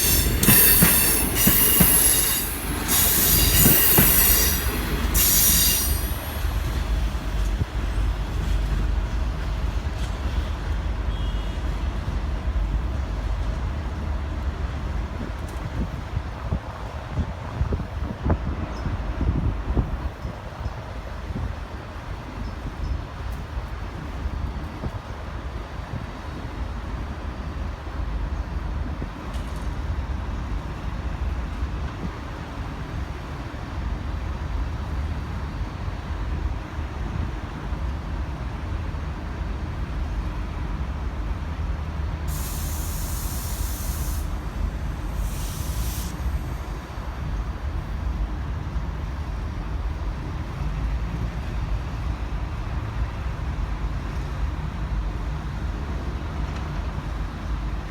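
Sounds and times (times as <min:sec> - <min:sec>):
compressed air hiss: 0:00.0 - 0:06.8, 0:42.3 - 0:46.8
locomotive rumble: 0:00.0 - 0:31.6.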